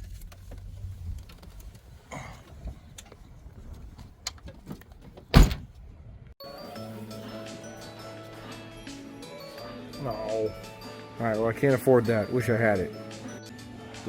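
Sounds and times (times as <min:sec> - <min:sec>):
vehicle door being shut: 0:05.2 - 0:05.7.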